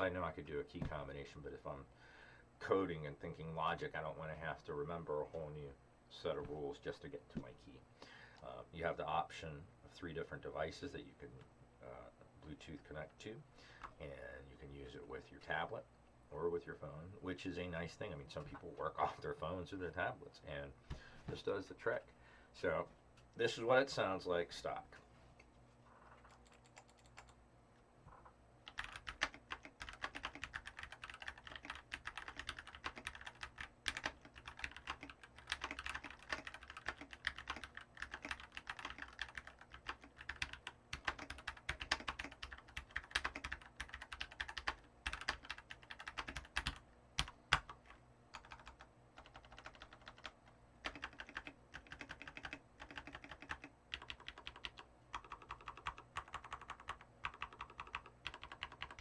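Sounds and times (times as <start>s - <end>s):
mechanical keyboard typing: 26.2s - 27.4s, 28.7s - 47.8s, 48.4s - 59.0s.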